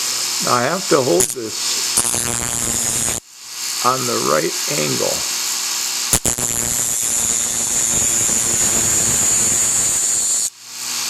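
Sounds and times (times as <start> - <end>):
rotary tool grinding drill bit: 0.1 - 3.2, 6.0 - 10.9.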